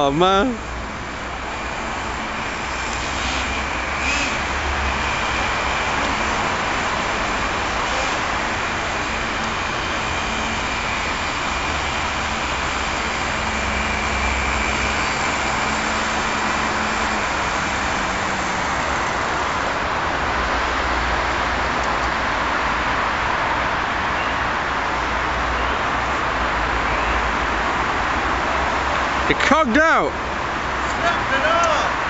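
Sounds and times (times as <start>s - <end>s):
steady rushing hiss: 0.0s - 20.8s
model car engine whine: 0.6s - 20.9s.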